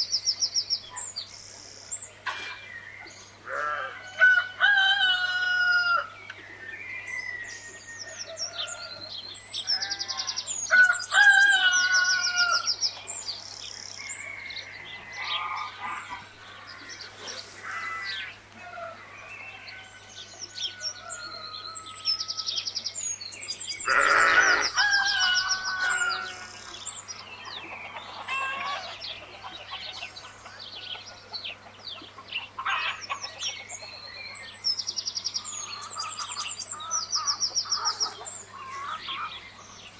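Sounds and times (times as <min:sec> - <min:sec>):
rooster crowing: 0:03.5 - 0:06.1, 0:09.8 - 0:12.7, 0:23.9 - 0:26.7
small birds chirping: 0:06.1 - 0:39.9
chickens clucking: 0:14.9 - 0:19.0, 0:25.5 - 0:34.4, 0:35.8 - 0:39.7.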